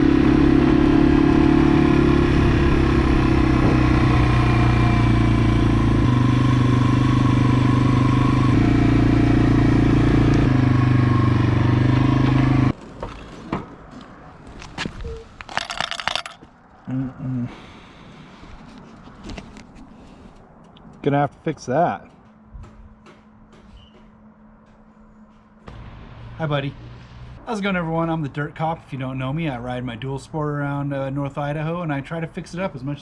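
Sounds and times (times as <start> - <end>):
motorcycle engine running: 0.0 - 12.8.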